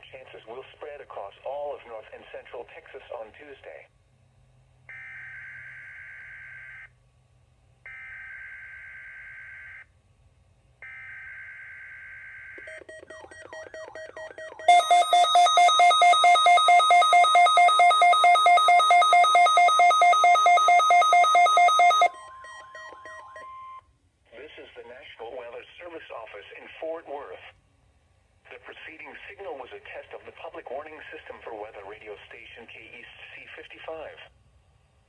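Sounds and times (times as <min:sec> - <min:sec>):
pulsing electronic alarm beep: 0:10.9 - 0:23.8.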